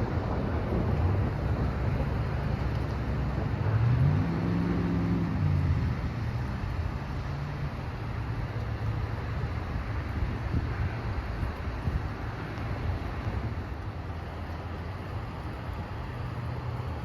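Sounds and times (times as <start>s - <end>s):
vehicle engine passing: 0.0s - 9.2s
rain: 0.0s - 17.0s
storm wind: 0.0s - 17.0s.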